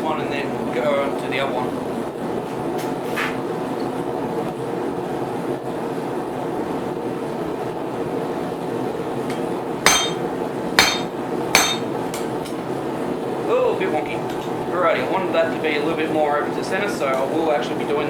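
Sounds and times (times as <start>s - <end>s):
steady background hum: 0.0s - 18.0s
hammer striking metal chisel: 9.3s - 10.2s, 10.8s - 12.3s.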